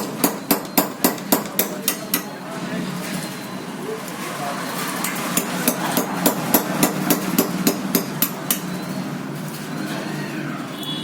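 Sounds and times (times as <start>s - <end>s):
hammer striking metal: 0.0s - 2.4s, 5.0s - 9.0s.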